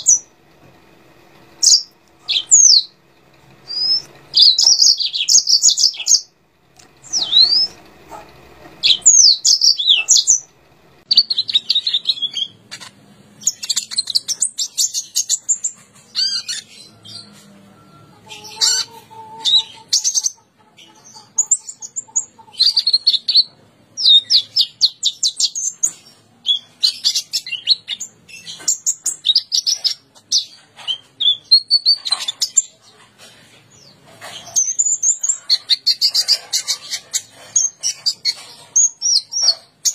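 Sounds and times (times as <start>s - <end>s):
songbird singing: 1.6s - 25.9s.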